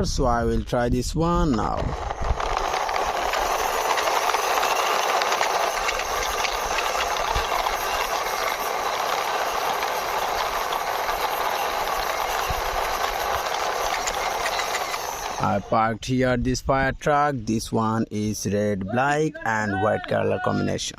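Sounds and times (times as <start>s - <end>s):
toy truck wheels rolling: 1.3s - 15.7s.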